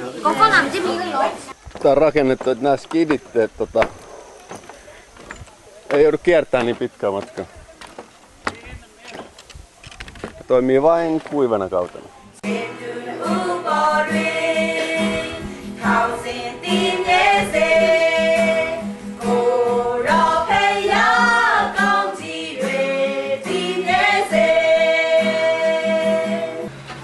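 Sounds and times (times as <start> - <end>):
song with sung vocals: 12.3 - 27.0.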